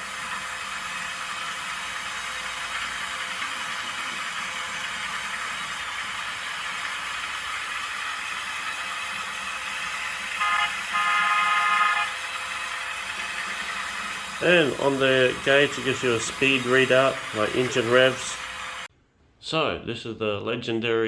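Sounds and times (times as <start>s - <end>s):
toy motors whirring: 0.0s - 18.9s
horn toot: 10.4s - 12.1s.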